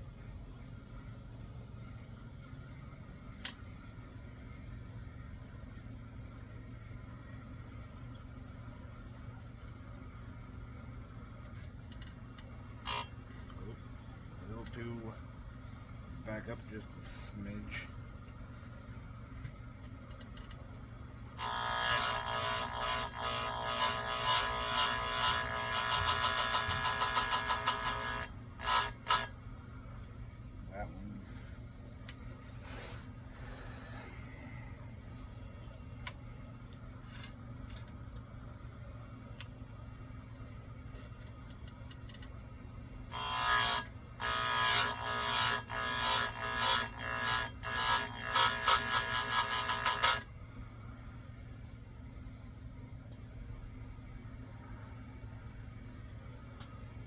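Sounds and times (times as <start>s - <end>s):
faint steady hum: 0.0s - 57.0s
grinder wheel rasping against chain: 12.8s - 13.1s, 21.4s - 29.3s, 43.1s - 50.3s
grinder motor hum: 12.8s - 13.7s, 21.4s - 29.3s, 43.1s - 50.3s.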